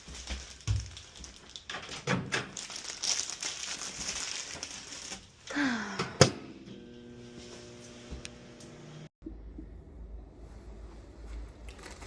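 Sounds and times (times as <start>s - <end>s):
food packaging crinkling: 0.0s - 5.4s, 11.6s - 12.0s.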